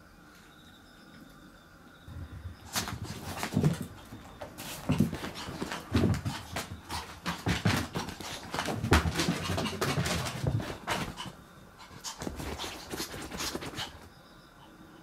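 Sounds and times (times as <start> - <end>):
dog paws tapping on floor: 2.7 - 14.1
small dog panting: 3.0 - 14.1.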